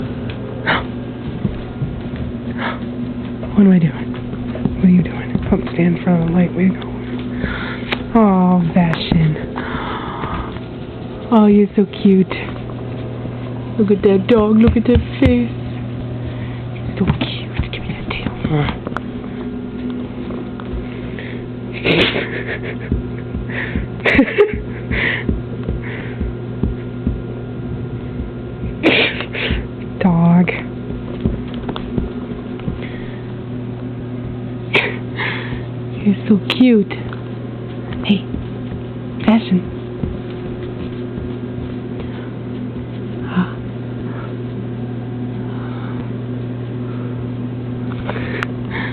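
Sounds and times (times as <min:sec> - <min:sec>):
electrical hum: 0:00.0 - 0:48.9
dog tail thumping on a cushion: 0:30.9 - 0:32.9, 0:39.7 - 0:42.9.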